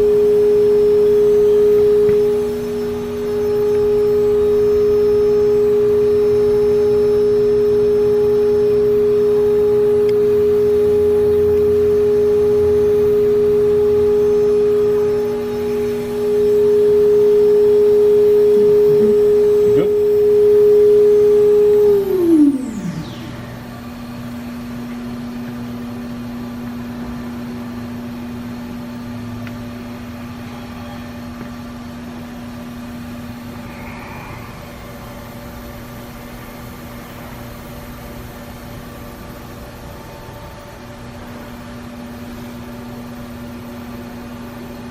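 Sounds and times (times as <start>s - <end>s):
spindle whine spinning down: 0.0s - 31.2s
machine hum: 0.0s - 44.9s.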